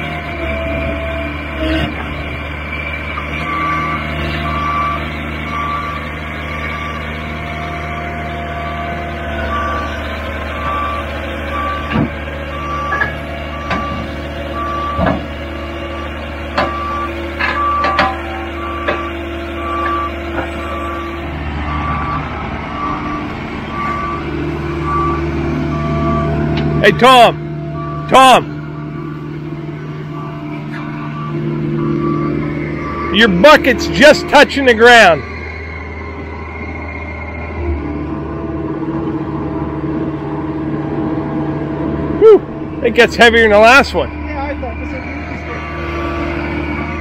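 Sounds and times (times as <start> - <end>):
diesel engine running: 0.0 - 47.0
reversing alarm beeping: 3.4 - 37.9.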